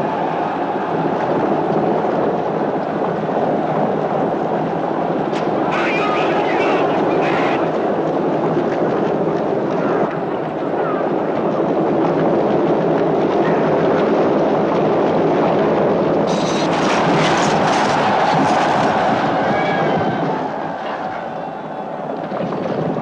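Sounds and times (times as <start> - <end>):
crowd cheering: 0.0 - 7.8, 16.4 - 23.0.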